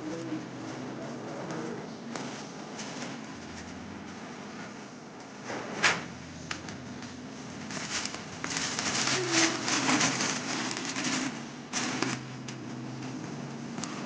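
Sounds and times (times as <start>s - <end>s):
cardboard packaging crinkling: 7.6s - 12.6s.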